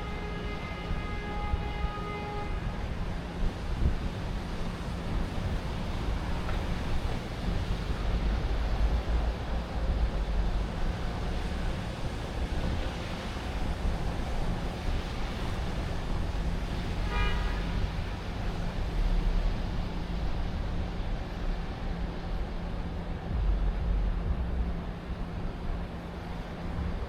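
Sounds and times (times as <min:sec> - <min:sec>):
city traffic rumble: 0:00.0 - 0:27.0
short car horn toot: 0:17.1 - 0:17.6.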